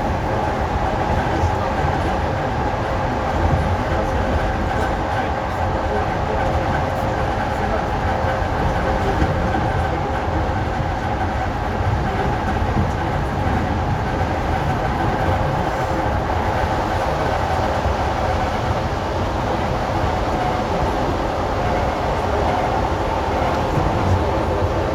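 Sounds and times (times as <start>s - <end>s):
electric train rumble: 0.0s - 24.9s
steady whining tones: 14.4s - 24.9s.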